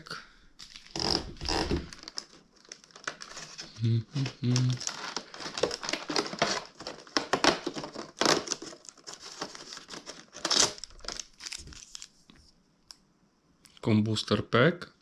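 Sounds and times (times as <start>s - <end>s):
packaging crinkling and tearing: 0.6s - 12.2s.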